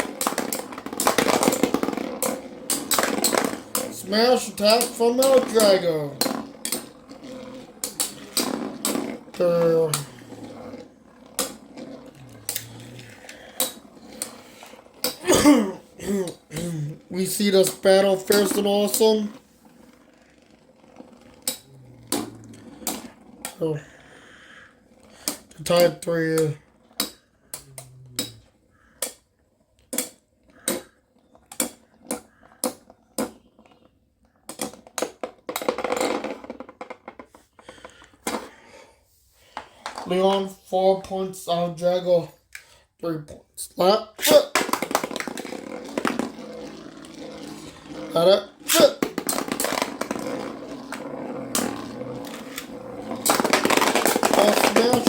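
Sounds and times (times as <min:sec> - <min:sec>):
metal spinning tops clacking: 0:00.0 - 0:15.4, 0:16.2 - 0:23.7, 0:44.2 - 0:55.0
spinning tops rattling scrape: 0:00.0 - 0:27.2, 0:44.2 - 0:55.0.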